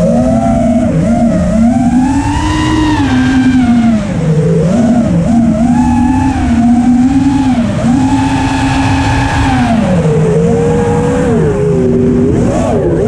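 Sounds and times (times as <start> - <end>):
drone motors whining: 0.0 - 13.0.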